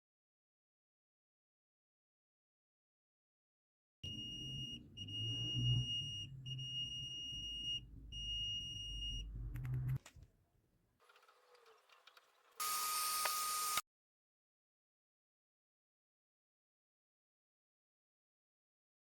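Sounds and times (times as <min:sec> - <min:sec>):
multimeter continuity beeps: 0:04.0 - 0:09.4
probe handling noise: 0:09.2 - 0:10.3, 0:11.1 - 0:13.8.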